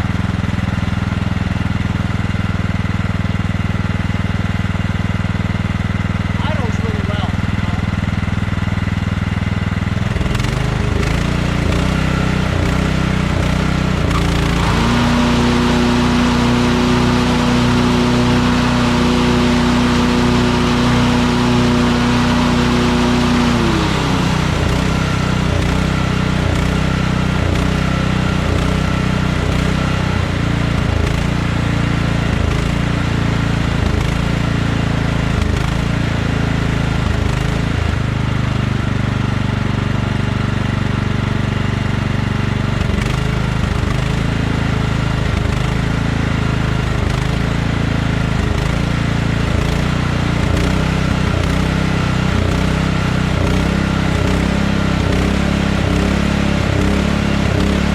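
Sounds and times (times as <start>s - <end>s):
small engine running: 0.0s - 57.9s.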